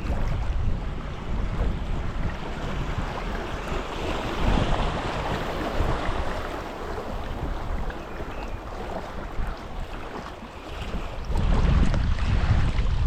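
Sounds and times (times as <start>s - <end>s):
wind buffeting microphone: 0.0s - 13.0s
river water rushing: 2.5s - 11.8s.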